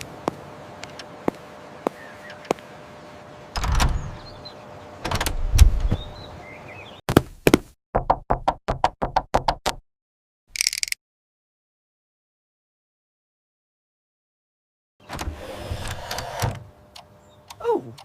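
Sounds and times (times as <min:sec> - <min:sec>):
knocking on a door: 0:08.0 - 0:09.6.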